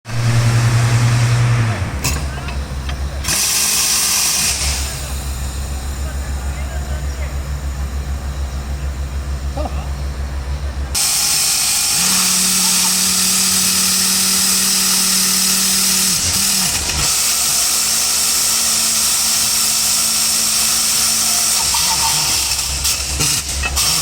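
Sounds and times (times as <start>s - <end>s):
drill hissing and grinding: 0.1s - 6.3s, 11.0s - 24.0s
low engine throb: 0.1s - 17.1s.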